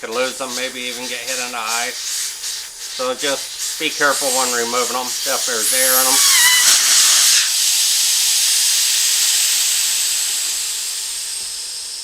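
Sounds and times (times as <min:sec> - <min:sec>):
air hissing out of tire: 0:00.0 - 0:12.0.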